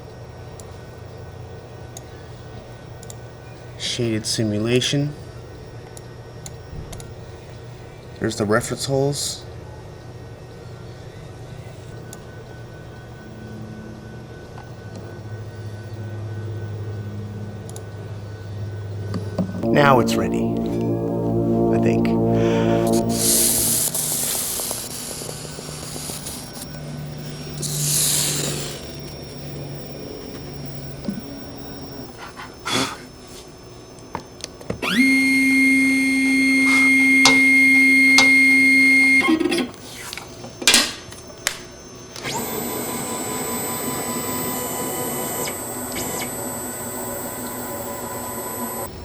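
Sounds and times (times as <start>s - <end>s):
router motor whining: 42.2s - 48.9s.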